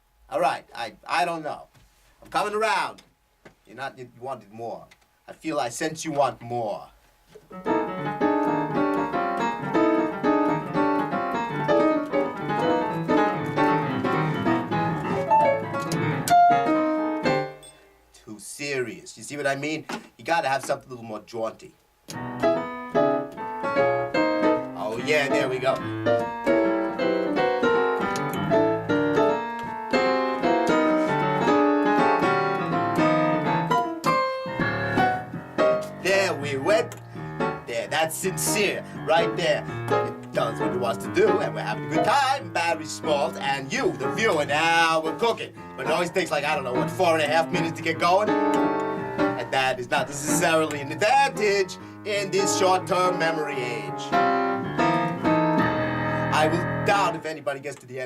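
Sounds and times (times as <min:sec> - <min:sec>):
piano playing dense chords: 0:07.5 - 0:17.8, 0:22.1 - 0:57.5.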